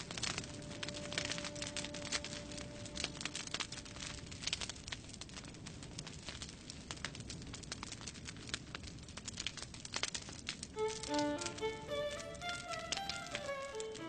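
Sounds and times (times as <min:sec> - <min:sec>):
held violin notes: 0:00.0 - 0:04.5, 0:10.8 - 0:14.0
wood fire crackling and popping: 0:00.0 - 0:14.0.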